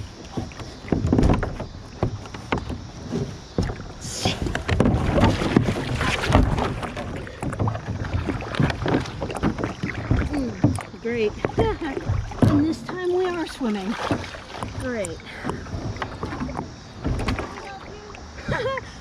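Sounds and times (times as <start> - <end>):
kayak knocking against a dock: 0.0 - 18.8
churning splashing water: 0.0 - 19.0
splash into water: 3.6 - 10.9, 11.5 - 15.0, 15.7 - 18.3.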